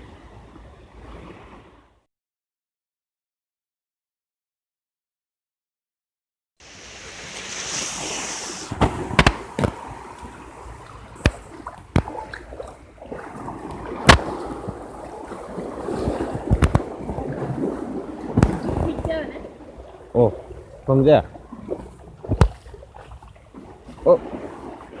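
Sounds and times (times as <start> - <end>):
sea waves washing: 6.6 - 25.0.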